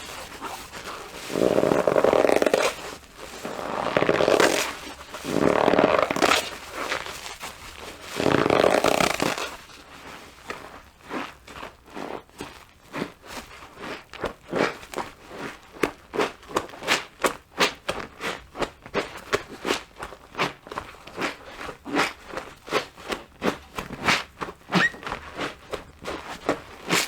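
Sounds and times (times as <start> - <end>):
wet sponge squelching: 0.0 - 11.9
short rising squeak: 24.8 - 25.1.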